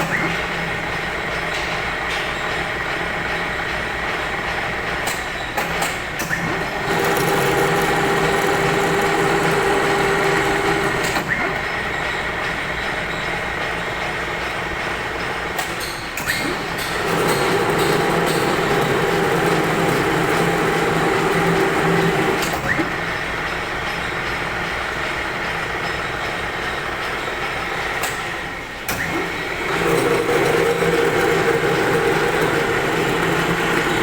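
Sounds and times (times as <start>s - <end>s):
metal lathe humming: 6.6s - 11.3s, 16.9s - 22.7s, 29.1s - 34.0s.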